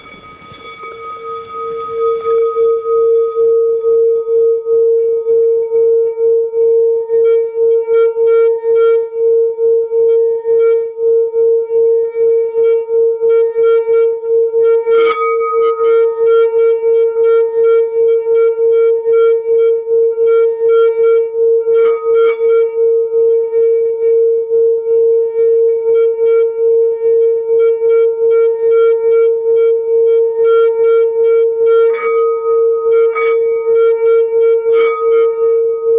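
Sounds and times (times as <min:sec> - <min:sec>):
singing bowl ringing: 0:00.0 - 0:07.5, 0:20.4 - 0:35.9.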